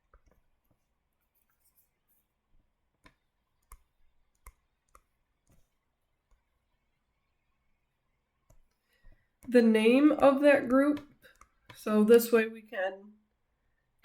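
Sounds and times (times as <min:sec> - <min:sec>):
handwriting clicks and taps: 0:02.9 - 0:06.5, 0:08.4 - 0:09.5, 0:10.1 - 0:11.8.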